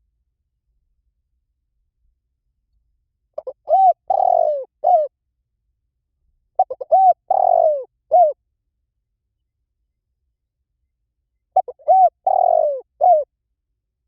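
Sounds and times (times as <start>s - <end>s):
dove cooing: 3.4s - 5.1s, 6.6s - 8.4s, 11.6s - 13.3s.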